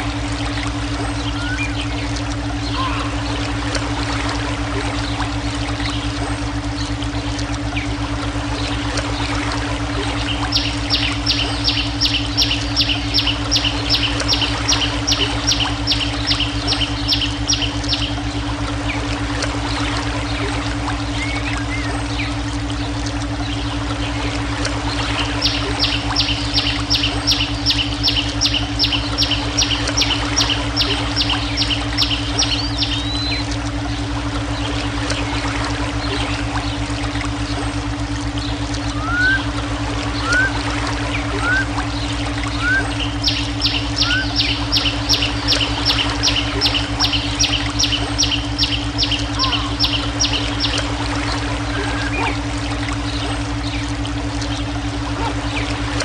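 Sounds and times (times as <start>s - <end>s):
running water: 0.0s - 56.0s
steady low hum: 0.0s - 56.0s
steady low tones: 0.0s - 56.0s
bird calling high notes: 1.0s - 3.6s, 10.2s - 18.9s, 24.9s - 34.0s, 37.4s - 52.5s.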